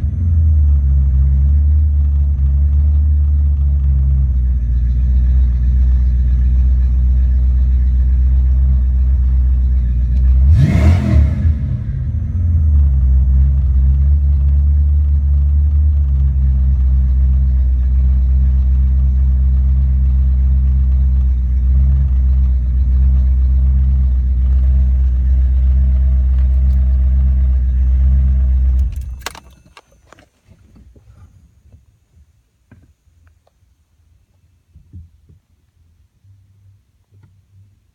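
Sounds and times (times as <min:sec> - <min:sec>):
car engine idling: 0:00.0 - 0:30.2.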